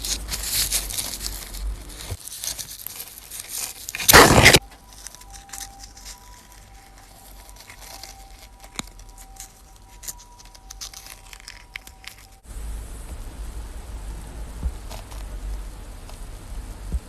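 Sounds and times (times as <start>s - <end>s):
crinkling craft material: 0.0s - 12.5s, 14.6s - 17.0s
faint steady high tone: 4.2s - 12.9s.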